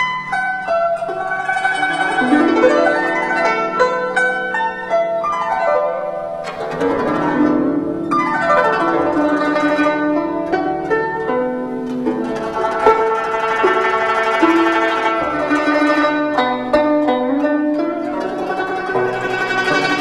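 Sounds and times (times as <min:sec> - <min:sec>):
guzheng glissandi: 0:00.0 - 0:20.0
guzheng plucked notes: 0:00.0 - 0:20.0.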